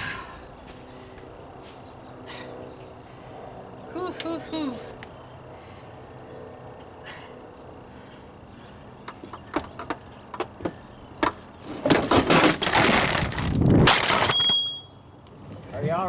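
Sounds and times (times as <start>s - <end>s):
camera crashing on concrete: 11.8s - 14.6s.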